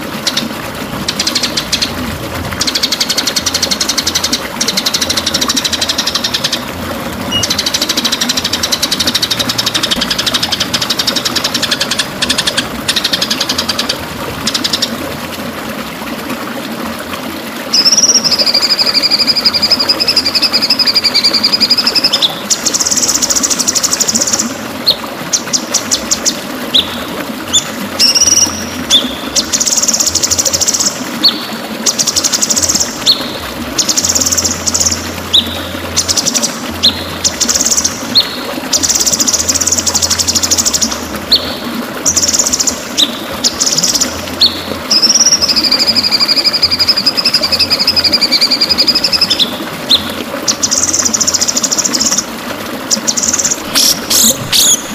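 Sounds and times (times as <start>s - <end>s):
bird singing trills and whistles: 7.3s - 13.4s, 17.7s - 24.4s, 27.5s - 32.1s, 42.1s - 50.1s, 53.1s - 54.9s.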